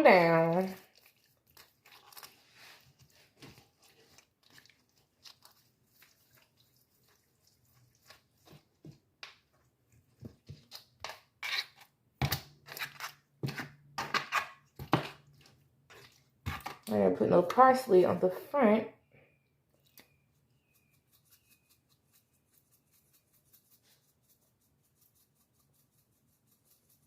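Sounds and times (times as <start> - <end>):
hands rubbing raw chicken: 0.0 - 12.0, 19.7 - 27.0.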